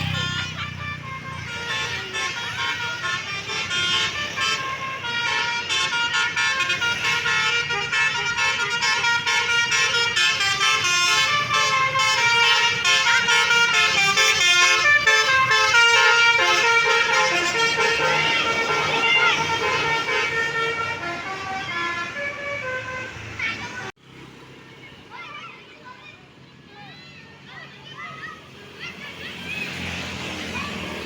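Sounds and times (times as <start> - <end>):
multi-tone bus horn melody: 0.0 - 24.0.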